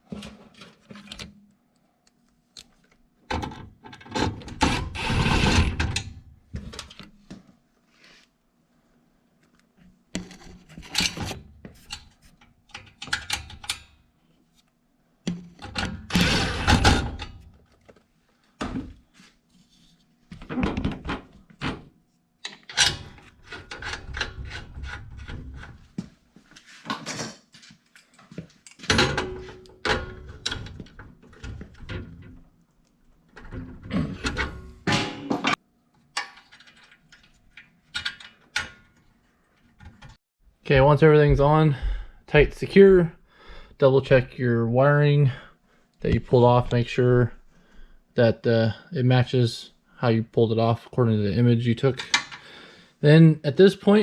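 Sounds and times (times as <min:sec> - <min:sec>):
metal parts clunking and scraping: 0:10.2 - 0:13.9.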